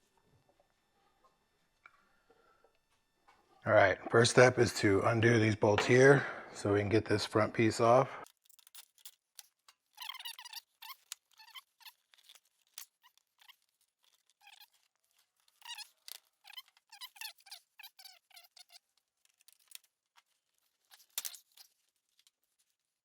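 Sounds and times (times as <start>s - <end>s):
bolts clicking and squeaking: 8.2s - 22.6s.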